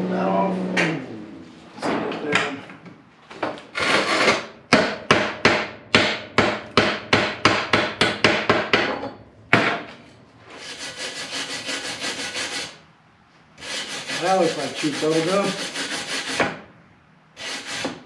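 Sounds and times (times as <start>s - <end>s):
wire brush scrubbing: 10.5s - 12.8s, 13.6s - 16.4s, 17.4s - 18.0s.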